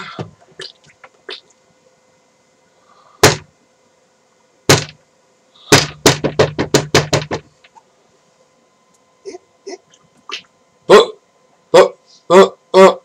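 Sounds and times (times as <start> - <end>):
knocking on a door: 4.7 - 5.0, 5.8 - 7.5.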